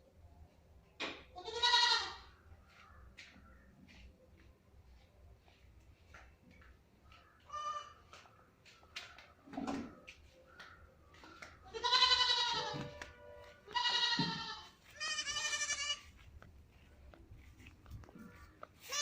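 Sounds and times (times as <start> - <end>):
goats bleating: 1.4 - 2.3, 11.7 - 12.9, 13.6 - 16.2.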